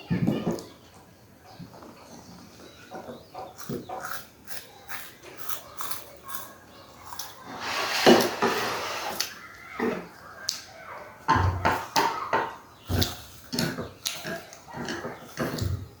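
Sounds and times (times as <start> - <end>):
chewing and mouth smacking: 3.4 - 7.4, 12.9 - 15.8.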